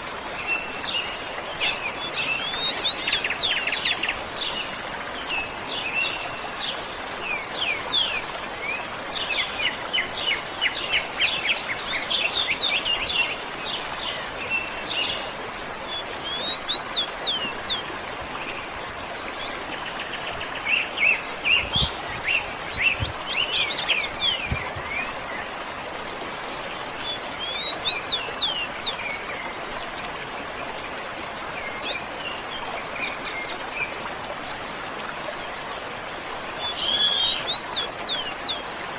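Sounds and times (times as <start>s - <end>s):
waterfall rushing: 0.0s - 38.9s
small birds chirping: 14.0s - 25.6s.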